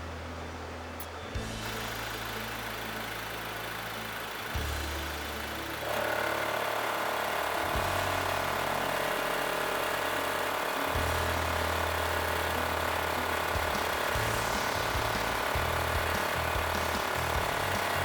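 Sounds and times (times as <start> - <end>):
air compressor running: 1.0 - 18.0.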